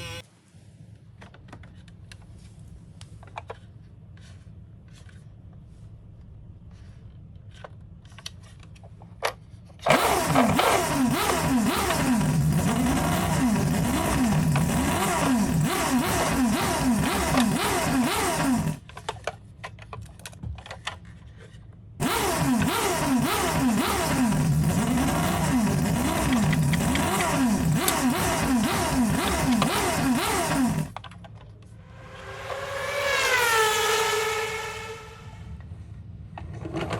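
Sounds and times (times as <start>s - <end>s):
toy car wheels on plastic: 7.0s - 31.8s.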